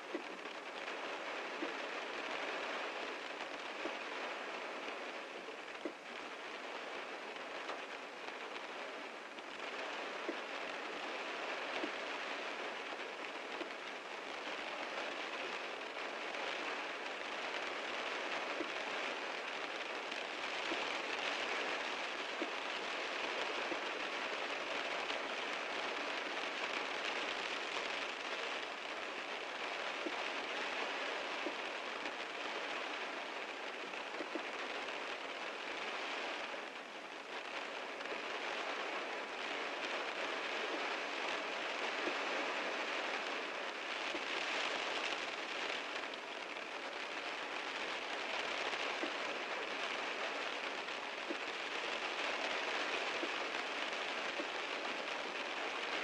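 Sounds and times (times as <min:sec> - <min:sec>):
heavy rain on a car: 0:00.0 - 0:56.0.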